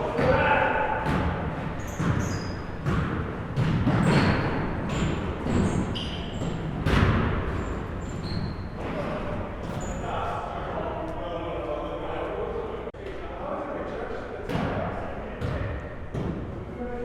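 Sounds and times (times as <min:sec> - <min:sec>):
sneakers squeaking: 0:00.1 - 0:10.4
basketball bouncing on gym floor: 0:00.2 - 0:08.6.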